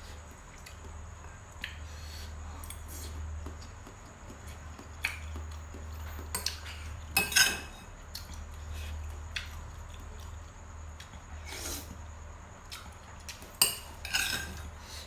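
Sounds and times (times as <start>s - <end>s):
steady low hum: 0.0s - 15.0s
spoon and fork clinking on bowl: 7.2s - 7.9s, 13.6s - 14.6s.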